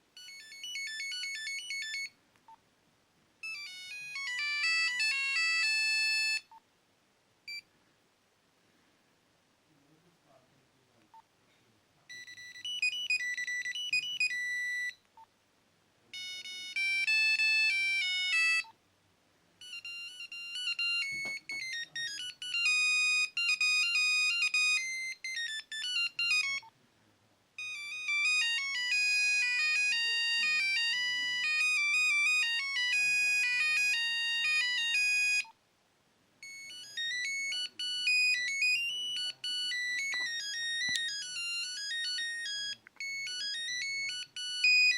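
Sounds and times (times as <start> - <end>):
mobile phone beeping ringtones: 0.2 - 2.2, 3.4 - 6.6, 12.1 - 15.0, 16.1 - 18.8, 19.6 - 26.7, 27.6 - 35.6, 36.4 - 44.9.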